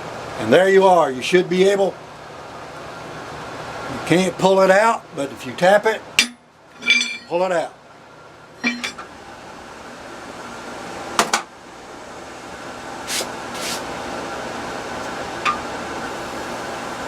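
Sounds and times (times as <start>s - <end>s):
fan-like hum: 0.0s - 17.0s
metal clinks and knocks: 6.2s - 7.4s, 8.6s - 9.1s.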